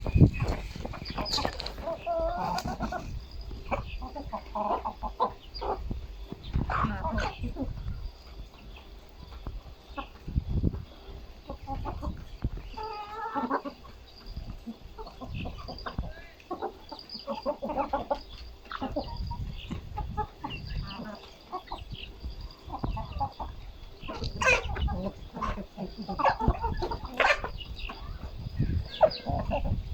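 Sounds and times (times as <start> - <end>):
chickens clucking: 0.0 - 29.9
sharp loud bird calls: 9.8 - 29.9.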